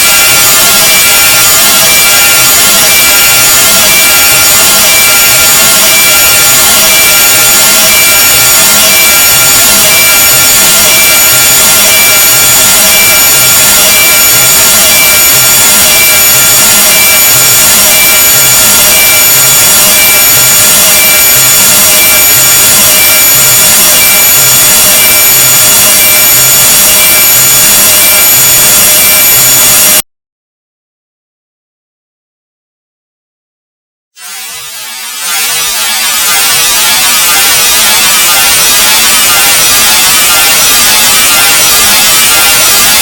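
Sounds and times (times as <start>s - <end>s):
steady high-pitched tones: 0.0s - 30.0s, 34.2s - 43.0s
harsh grating noise: 34.2s - 43.0s.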